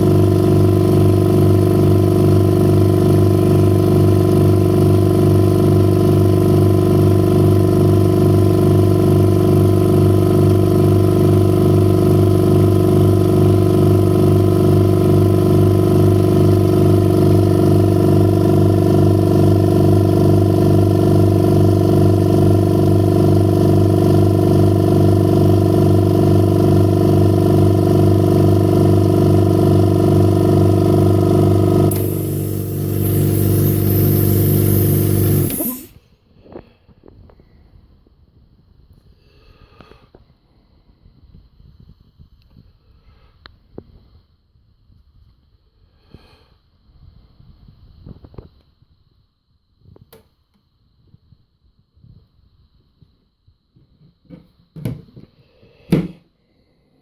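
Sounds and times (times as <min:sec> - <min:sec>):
motor humming with steady pulse: 0:00.0 - 0:36.0.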